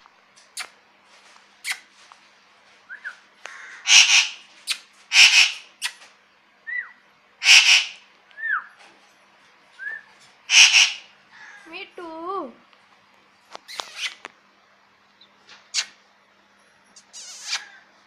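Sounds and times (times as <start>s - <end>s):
parrot screeching: 3.6s - 4.4s, 5.1s - 5.6s, 7.4s - 8.6s, 10.5s - 11.6s, 17.1s - 17.8s
whistled chirps: 9.8s - 10.1s.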